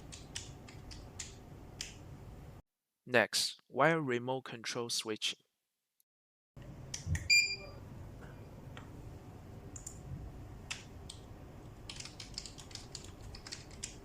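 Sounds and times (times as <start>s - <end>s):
computer keyboard typing: 11.9s - 14.0s.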